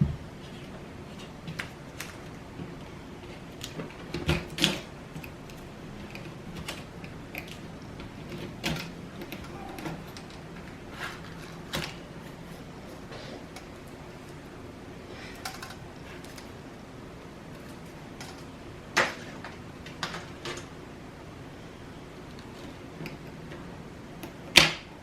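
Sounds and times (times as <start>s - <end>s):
plastic laptop parts clicking: 3.3s - 12.0s, 15.4s - 16.5s.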